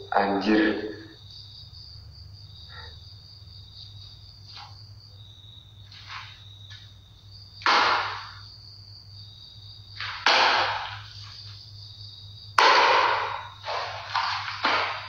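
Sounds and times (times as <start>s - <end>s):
insects chirping: 0.0s - 15.0s
sharp bangs with ringing tail: 7.7s - 8.4s, 10.3s - 11.1s, 12.6s - 13.6s.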